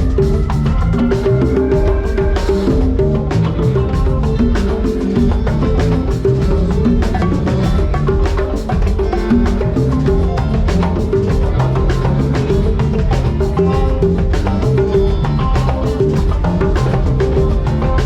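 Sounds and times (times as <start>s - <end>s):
instrumental band playing: 0.0s - 18.0s.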